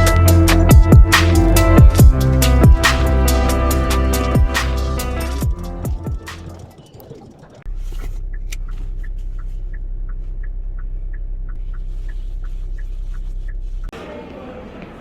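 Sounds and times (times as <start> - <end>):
turn signal ticking: 5.4 - 13.9
car cabin hum: 7.7 - 13.9.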